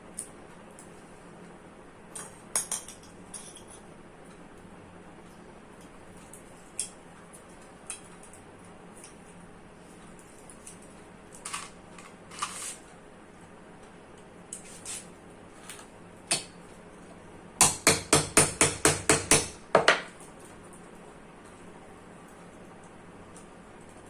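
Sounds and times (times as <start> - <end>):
hammer tapping on metal: 17.6 - 20.1.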